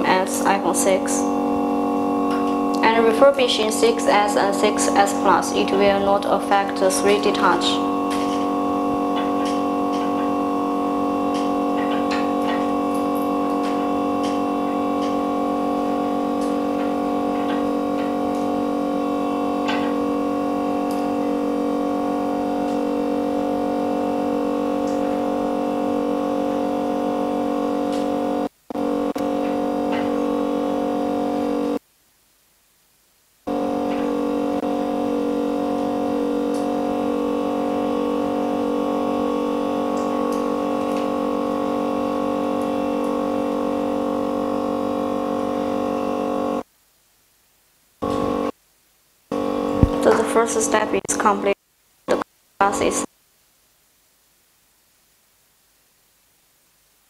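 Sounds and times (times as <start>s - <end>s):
sustained synthesizer chord: 0.0s - 31.8s, 33.5s - 46.6s.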